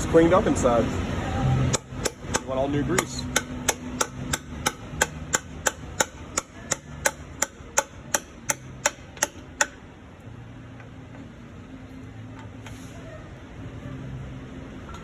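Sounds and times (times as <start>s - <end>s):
hammer blows on metal: 1.4s - 9.8s.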